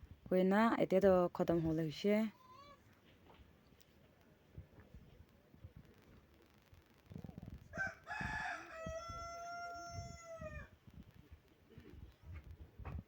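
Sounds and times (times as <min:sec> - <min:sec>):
rooster crowing: 0:07.7 - 0:10.7.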